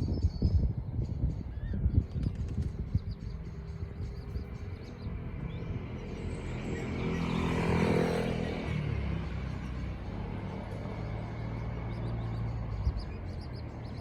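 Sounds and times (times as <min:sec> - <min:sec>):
engine passing by: 0:02.5 - 0:14.0.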